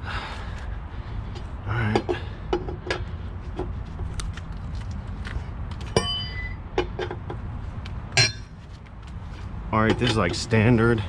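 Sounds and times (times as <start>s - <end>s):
metal tools clinking on lug nuts: 5.8s - 7.2s, 8.1s - 8.7s, 9.7s - 11.0s
ringing metal clang: 5.9s - 6.6s, 8.2s - 8.6s.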